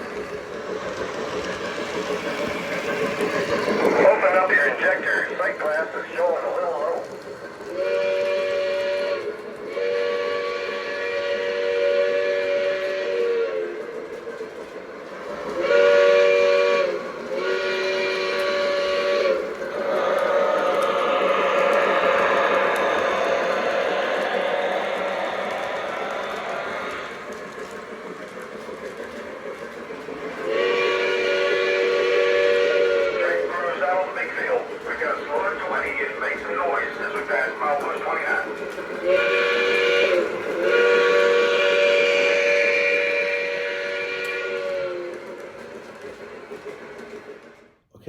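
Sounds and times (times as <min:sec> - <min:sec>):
train whistle blasts: 0:07.7 - 0:13.8, 0:15.6 - 0:27.7, 0:30.4 - 0:34.5, 0:39.0 - 0:45.4.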